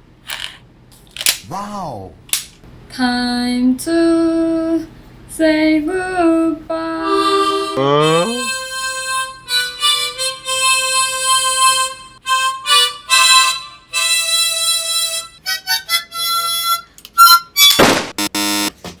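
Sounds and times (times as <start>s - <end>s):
reedy harmonica-like melody: 6.8s - 18.7s.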